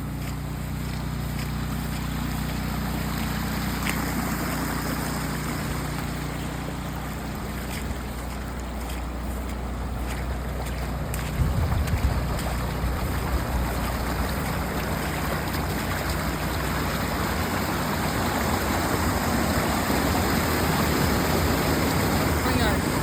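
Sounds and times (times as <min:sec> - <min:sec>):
rushing floodwater: 0:00.0 - 0:23.0
wind buffeting microphone: 0:11.1 - 0:14.7.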